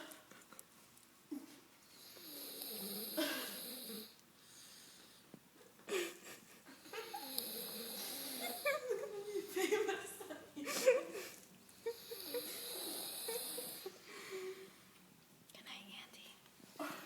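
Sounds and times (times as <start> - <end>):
person snoring: 2.0 - 4.1, 7.0 - 8.7, 11.9 - 13.9.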